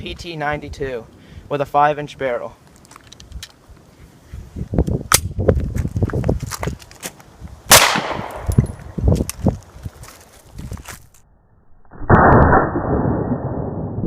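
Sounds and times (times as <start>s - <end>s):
pistol shot with echo: 7.7s - 8.6s.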